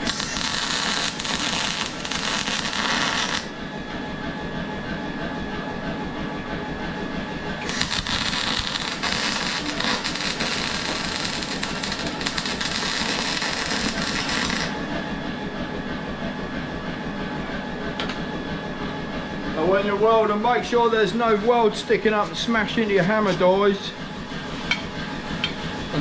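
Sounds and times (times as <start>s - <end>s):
arc welding crackle: 0.0s - 3.6s, 7.6s - 14.8s
workshop hum: 0.0s - 26.0s.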